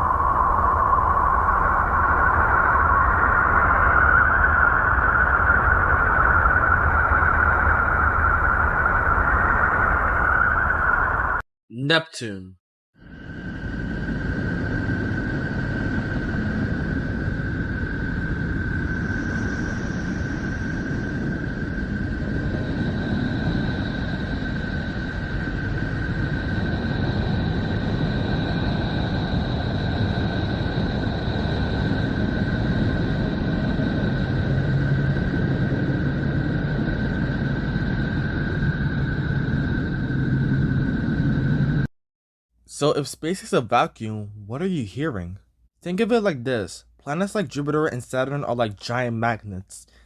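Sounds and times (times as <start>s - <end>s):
high whine: 0.0s - 11.4s, 13.0s - 41.9s
hissing drone: 0.0s - 11.4s, 13.0s - 41.9s
low rumble: 13.0s - 41.9s.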